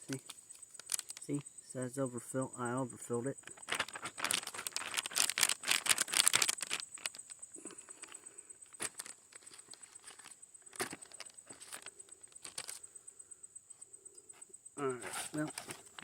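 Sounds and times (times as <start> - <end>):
ration heater crackling and popping: 0.0 - 1.5, 3.4 - 12.8, 14.8 - 16.0.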